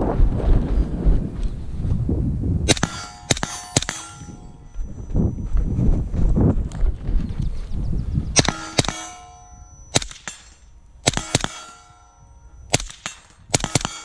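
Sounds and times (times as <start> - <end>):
suppressed rifle shots: 2.7 - 4.3, 8.4 - 14.0
steel targets ringing: 2.7 - 5.4, 8.4 - 14.0.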